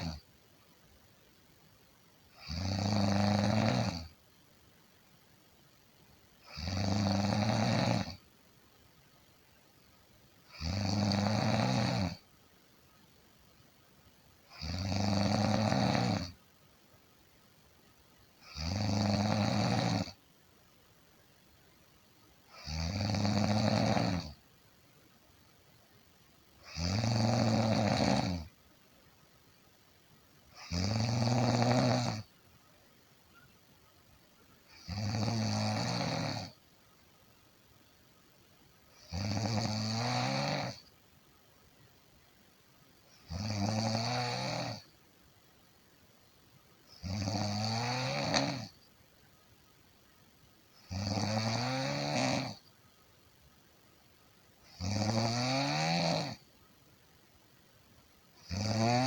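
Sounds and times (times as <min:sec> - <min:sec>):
pitched snoring: 0:00.0 - 0:00.2, 0:02.3 - 0:04.1, 0:06.4 - 0:08.2, 0:10.5 - 0:12.2, 0:14.5 - 0:16.4, 0:18.4 - 0:20.2, 0:22.5 - 0:24.4, 0:26.6 - 0:28.5, 0:30.5 - 0:32.3, 0:34.7 - 0:36.6, 0:39.0 - 0:40.9, 0:43.2 - 0:44.9, 0:46.9 - 0:48.8, 0:50.8 - 0:52.7, 0:54.7 - 0:56.5, 0:58.4 - 0:59.0.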